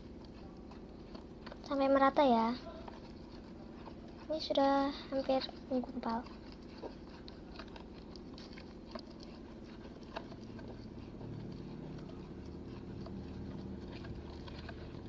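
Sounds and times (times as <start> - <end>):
low steady hum: 0.0 - 15.0
slime being stirred: 0.0 - 15.0.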